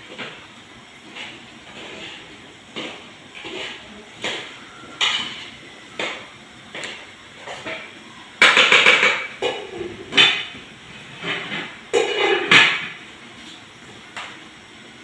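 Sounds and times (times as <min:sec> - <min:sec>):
utensil scraping a pan: 0:01.0 - 0:06.2.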